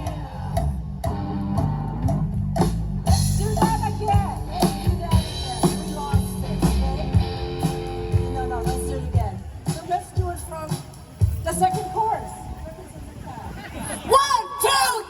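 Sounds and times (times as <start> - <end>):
bass guitar: 0.0 - 9.4
drums keeping a steady beat: 0.0 - 12.9
electric guitar: 1.1 - 9.3.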